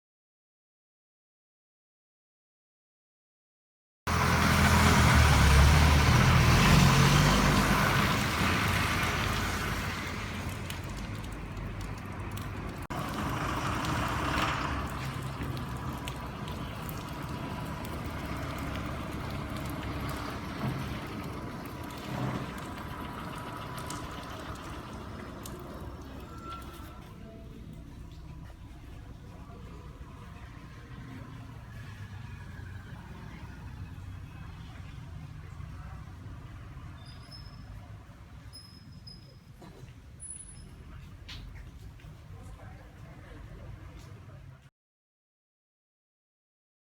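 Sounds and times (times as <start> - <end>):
rain hiss: 4.1 - 26.8
diesel bus engine pulling away: 4.1 - 41.7.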